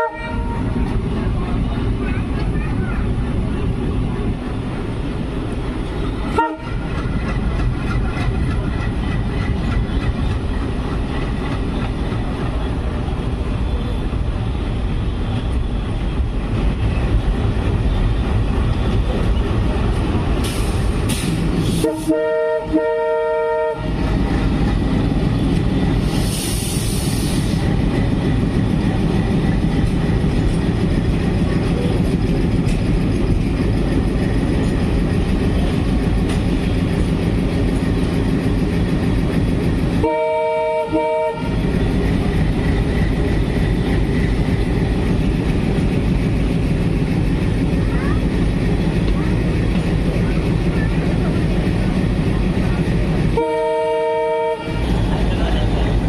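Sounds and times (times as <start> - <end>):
locomotive horn: 0.0 - 0.8, 6.3 - 6.9, 21.8 - 24.0, 40.0 - 41.6, 53.3 - 55.0
rail clatter: 0.0 - 23.0, 23.8 - 56.0
diesel locomotive rumble: 0.0 - 56.0.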